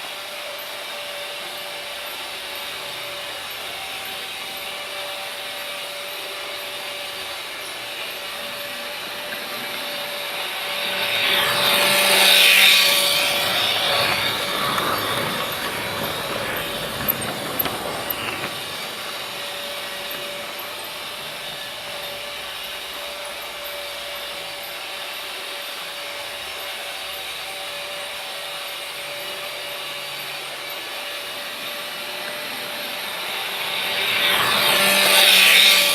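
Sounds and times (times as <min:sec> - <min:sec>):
freight train rumbling on rails: 0:07.8 - 0:22.4.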